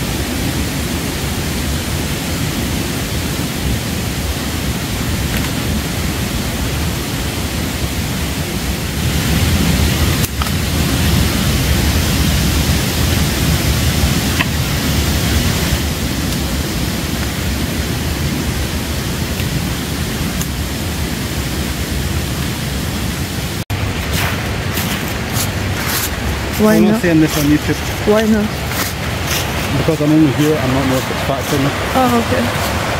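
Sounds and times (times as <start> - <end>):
waterfall roaring: 0.0 - 32.9.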